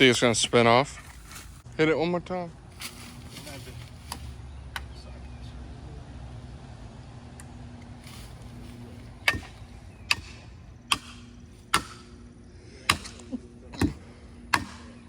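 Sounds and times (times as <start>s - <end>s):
hammer striking felling wedge: 8.3s - 12.2s, 12.9s - 15.0s.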